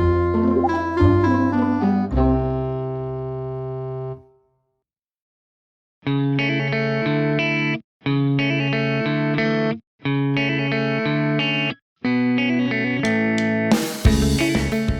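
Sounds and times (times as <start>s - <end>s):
instrumental music phrases: 0.1s - 2.9s.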